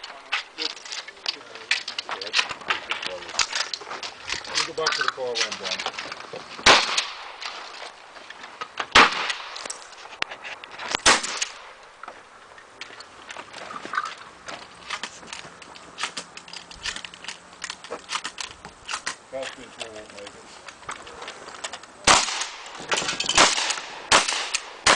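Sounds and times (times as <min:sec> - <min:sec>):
small clicks and knocks: 0:00.0 - 0:06.4, 0:09.6 - 0:22.0
shotgun shots with echo: 0:06.6 - 0:07.4, 0:08.9 - 0:09.6, 0:11.0 - 0:11.7, 0:22.0 - 0:24.9.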